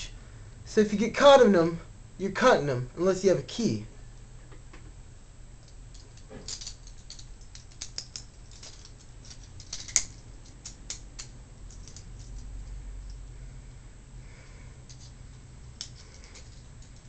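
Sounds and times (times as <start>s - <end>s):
handcuffs clicking and scraping: 5.6s - 13.2s, 14.8s - 17.0s.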